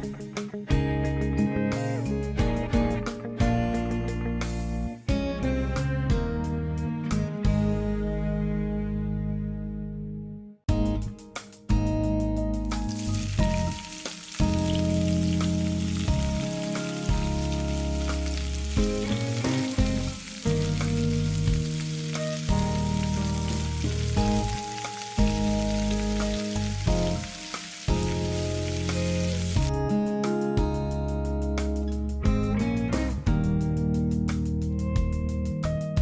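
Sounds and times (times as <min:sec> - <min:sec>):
background music: 0:00.0 - 0:36.0
food sizzling in oil: 0:12.7 - 0:29.7.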